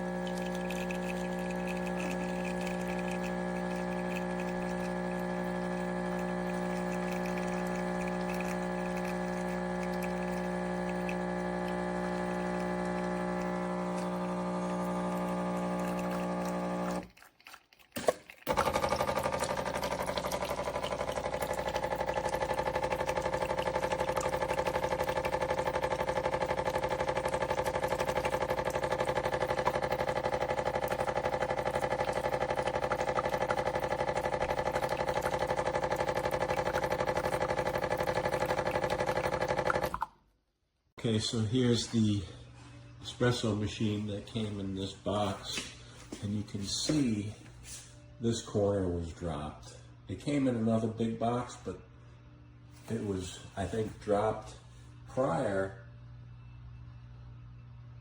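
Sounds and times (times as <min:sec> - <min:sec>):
espresso machine pump humming: 0:00.0 - 0:17.1, 0:18.5 - 0:40.1
steady machine hum: 0:00.0 - 0:17.1, 0:18.5 - 0:40.0.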